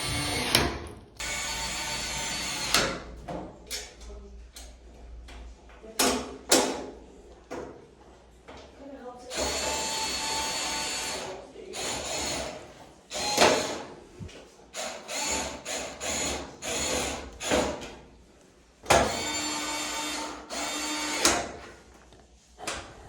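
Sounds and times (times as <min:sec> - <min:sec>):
cordless screwdriver whirring: 0:00.0 - 0:02.8, 0:14.8 - 0:17.6, 0:19.1 - 0:21.4.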